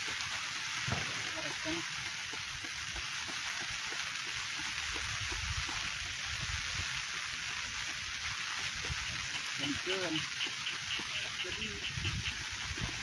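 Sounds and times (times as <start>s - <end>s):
steady rain falling: 0.0s - 13.0s.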